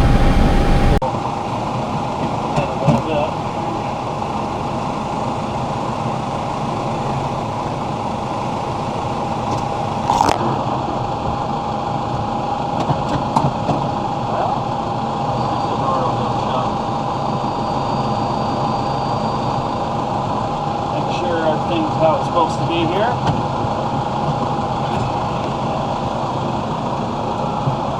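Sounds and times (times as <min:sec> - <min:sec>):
tractor diesel engine running: 0:00.0 - 0:01.0.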